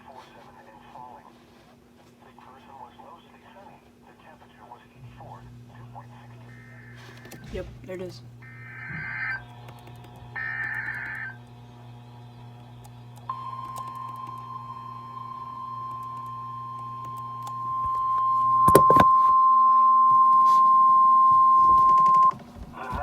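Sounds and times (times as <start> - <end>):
steady warning alert tone: 6.2 - 22.3
clicks: 7.1 - 7.7, 8.5 - 14.7, 15.5 - 19.4
screechy digital data burst: 8.4 - 9.6, 10.4 - 11.4.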